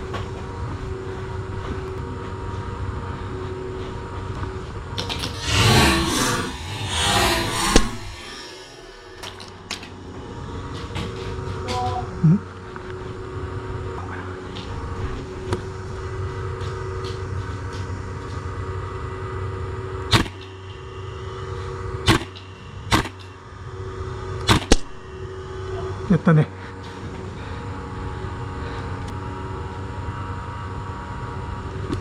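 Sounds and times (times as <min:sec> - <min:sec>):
steady mechanical hum: 0:00.0 - 0:32.0
airsoft gun shots: 0:20.1 - 0:20.5, 0:22.1 - 0:23.2, 0:24.5 - 0:25.0.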